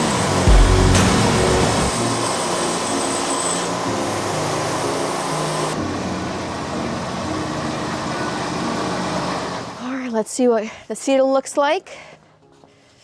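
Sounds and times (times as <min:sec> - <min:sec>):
high hiss: 0:00.0 - 0:05.8
band saw whining through log: 0:00.0 - 0:09.8.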